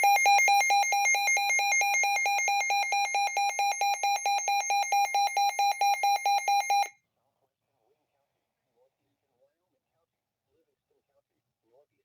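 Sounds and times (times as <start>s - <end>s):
rapid electronic alert beeps: 0.0s - 6.9s.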